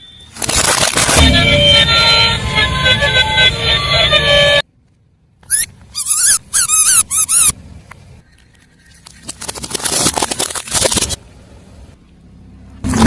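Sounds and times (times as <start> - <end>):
car tyre crushing something brittle: 0.2 - 1.4, 8.4 - 11.2
high wavering squeaks: 5.5 - 7.6.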